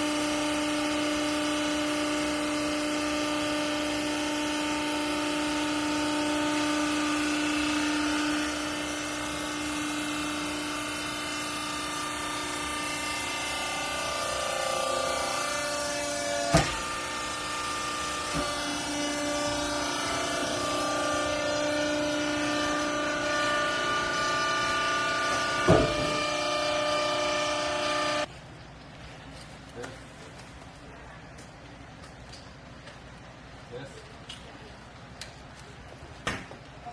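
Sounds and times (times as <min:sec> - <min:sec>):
cloth baler machine hum: 0:00.0 - 0:28.3.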